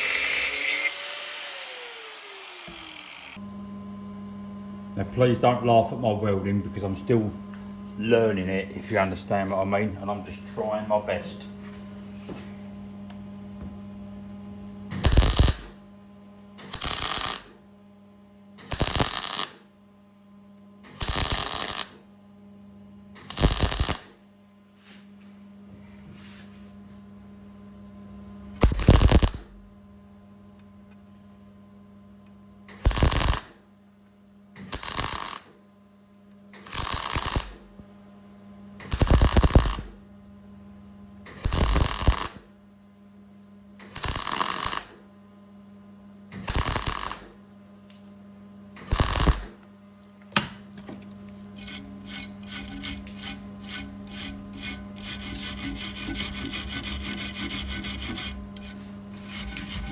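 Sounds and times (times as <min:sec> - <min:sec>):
electrical hum: 0:00.0 - 0:59.9
spot welds crackling: 0:14.9 - 0:15.8, 0:16.6 - 0:17.6, 0:18.6 - 0:19.7, 0:20.9 - 0:22.0, 0:23.2 - 0:24.2, 0:28.6 - 0:29.5, 0:32.7 - 0:33.6, 0:34.6 - 0:35.5, 0:36.6 - 0:37.7, 0:38.8 - 0:40.0, 0:41.3 - 0:42.4, 0:43.8 - 0:45.0, 0:46.4 - 0:47.4, 0:48.8 - 0:49.6
file rasping on steel: 0:51.6 - 0:59.9.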